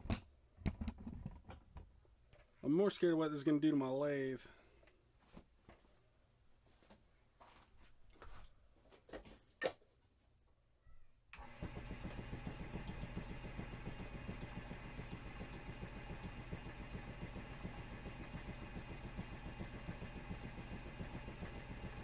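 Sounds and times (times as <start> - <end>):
wood lathe throbbing: 11.4 - 22.0.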